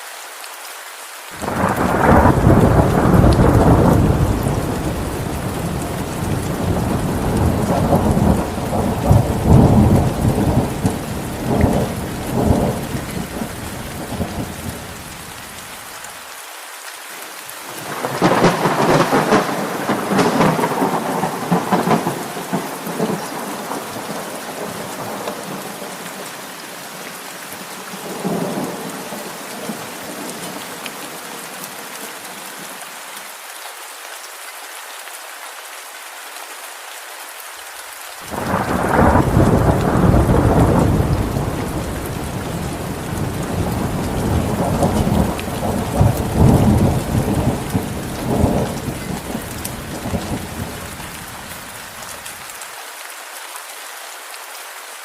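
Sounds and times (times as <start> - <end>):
steady rain: 0.0 - 55.0
rolling thunder: 1.4 - 15.0, 17.9 - 25.8, 38.3 - 51.2.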